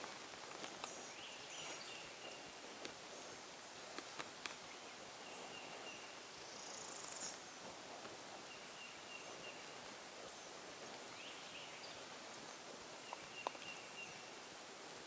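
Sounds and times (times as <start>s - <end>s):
steady hiss: 0.0s - 15.0s.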